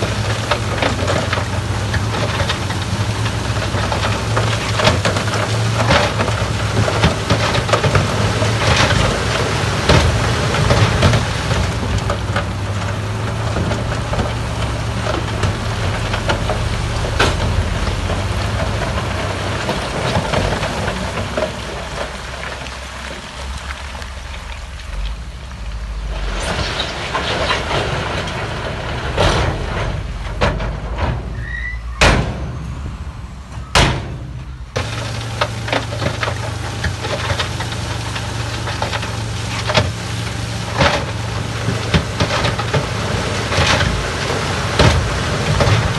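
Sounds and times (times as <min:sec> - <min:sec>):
diesel engine drone: 0:00.0 - 0:45.9
sharp bangs: 0:33.5 - 0:34.8.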